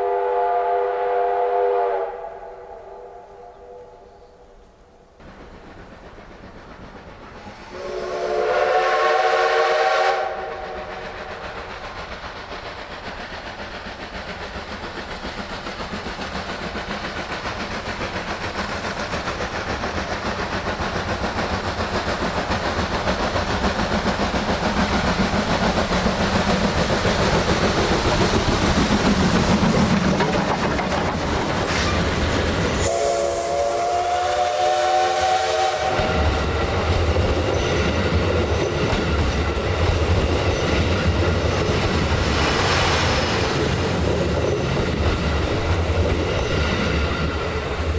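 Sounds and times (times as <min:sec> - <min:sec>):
steam locomotive chime whistle: 0:00.0 - 0:04.4, 0:07.5 - 0:11.4, 0:32.8 - 0:36.6
train running and exhaust: 0:00.0 - 0:47.9.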